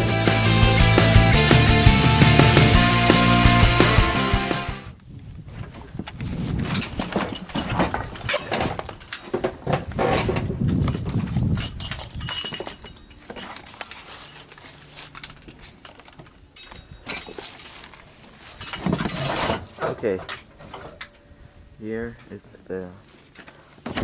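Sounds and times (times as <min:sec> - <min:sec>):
rustling: 0:05.5 - 0:21.5, 0:22.2 - 0:24.0.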